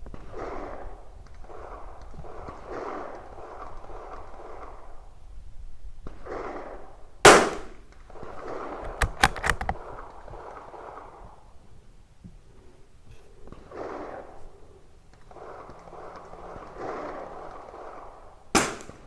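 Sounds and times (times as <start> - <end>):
rifle shot: 7.3 - 7.7, 8.9 - 9.8, 18.6 - 19.0
rifle bolt clicks: 8.8 - 9.8.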